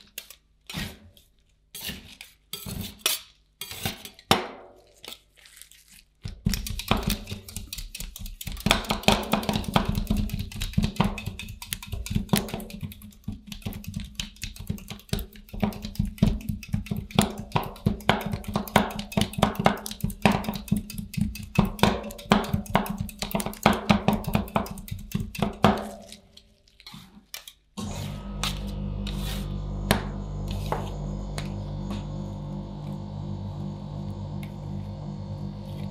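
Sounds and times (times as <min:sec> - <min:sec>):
low hum: 0:27.8 - 0:35.9.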